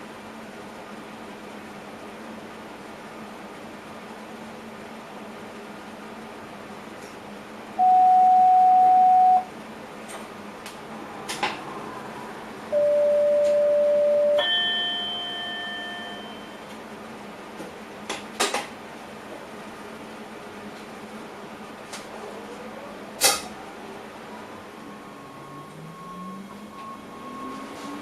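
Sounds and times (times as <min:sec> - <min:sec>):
long steady beeps: 0:07.8 - 0:09.5, 0:12.7 - 0:16.6, 0:24.8 - 0:27.7
chime ringing: 0:14.3 - 0:16.6.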